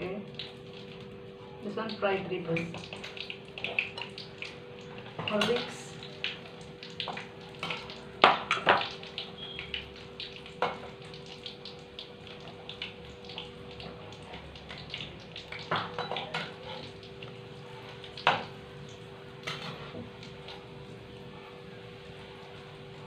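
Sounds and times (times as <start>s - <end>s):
oil sizzling and crackling: 0.0s - 23.0s.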